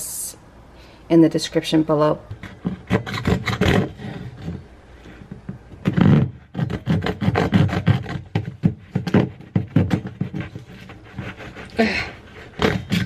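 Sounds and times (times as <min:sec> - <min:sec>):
hand saw rasping strokes: 0:10.2 - 0:13.0.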